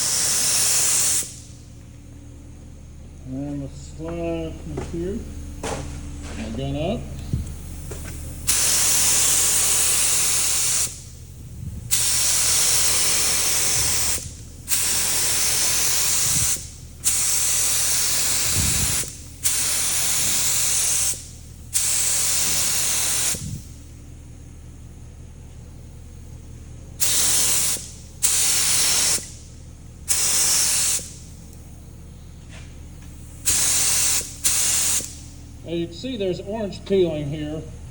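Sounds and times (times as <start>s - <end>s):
paint spray gun hissing: 0.0s - 1.7s, 7.4s - 23.7s, 27.0s - 29.4s, 30.0s - 31.8s, 33.0s - 35.4s
low steady hum: 1.2s - 19.4s, 23.4s - 27.0s, 31.0s - 33.5s, 35.0s - 37.9s.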